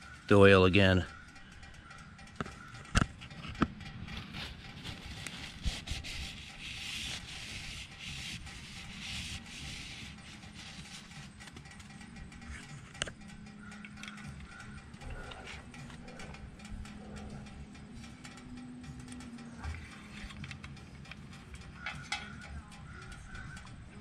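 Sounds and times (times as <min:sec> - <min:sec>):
sharp clicks: 0:00.0 - 0:05.5, 0:10.1 - 0:24.0
dipstick rubbing and scraping: 0:02.4 - 0:13.2, 0:19.6 - 0:23.6.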